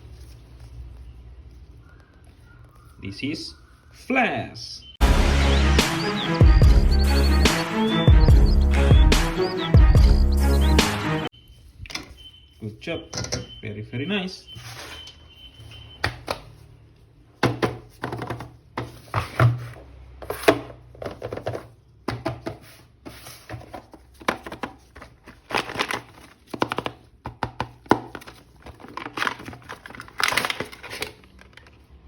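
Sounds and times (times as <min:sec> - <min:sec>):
plastic clicks and crinkling: 0:27.9 - 0:32.0.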